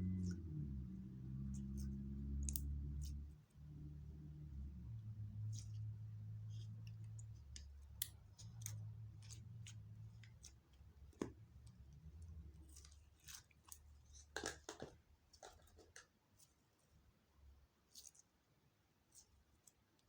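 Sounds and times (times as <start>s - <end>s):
low hum: 0.0s - 12.7s.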